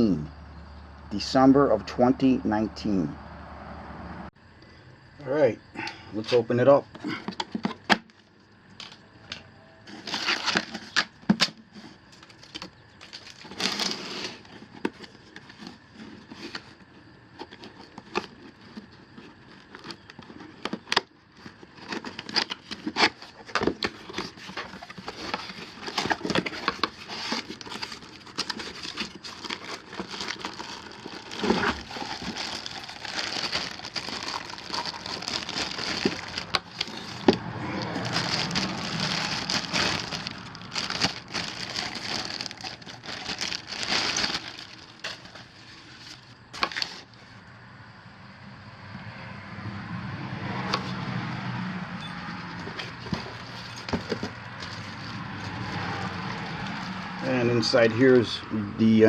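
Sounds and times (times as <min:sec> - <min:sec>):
cardboard packaging rustling: 0:09.8 - 0:47.3, 0:52.4 - 0:57.9.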